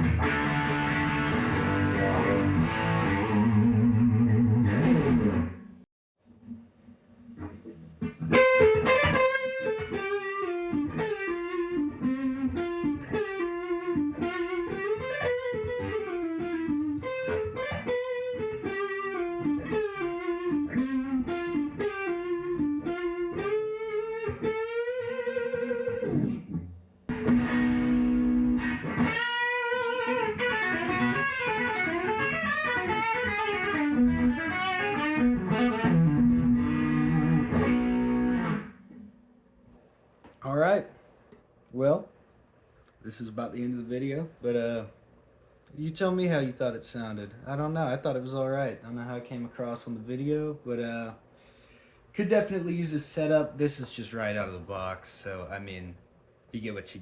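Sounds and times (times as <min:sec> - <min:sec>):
electric guitar lead lines: 0:00.0 - 0:05.8, 0:07.2 - 0:39.2.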